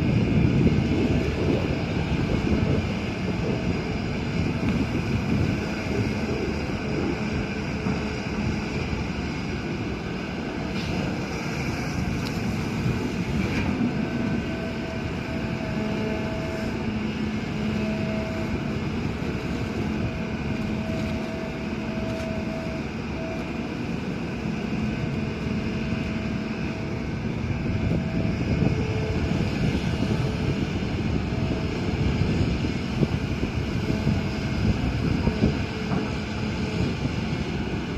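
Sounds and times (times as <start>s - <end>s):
excavator diesel engine running: 0.0s - 37.9s.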